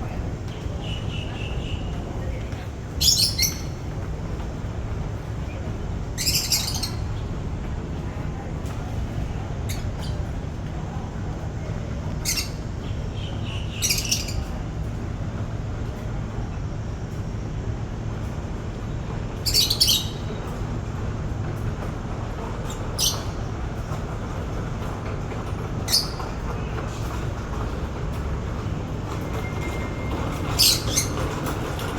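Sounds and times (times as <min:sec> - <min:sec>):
low background rumble: 0:00.0 - 0:31.9
birds chirping and squawking: 0:03.0 - 0:03.8, 0:06.2 - 0:07.1, 0:13.2 - 0:14.6, 0:19.4 - 0:20.3, 0:22.6 - 0:23.4, 0:25.9 - 0:26.3, 0:29.7 - 0:31.9.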